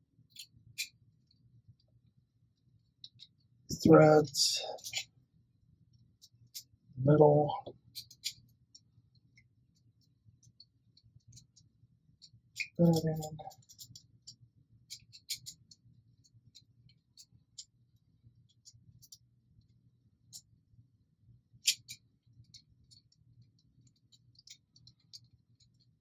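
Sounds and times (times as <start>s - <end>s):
low steady hum: 1.6s - 4.9s.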